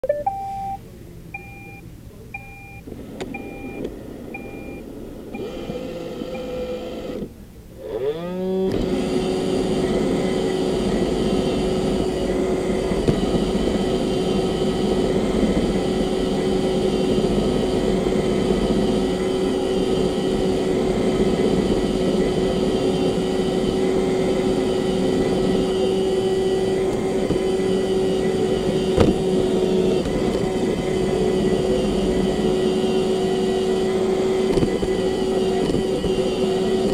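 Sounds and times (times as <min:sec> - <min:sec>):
robot vacuum beeping: 0:00.0 - 0:00.8, 0:01.4 - 0:01.8, 0:02.4 - 0:07.3
vacuum motor whining: 0:02.3 - 0:36.9.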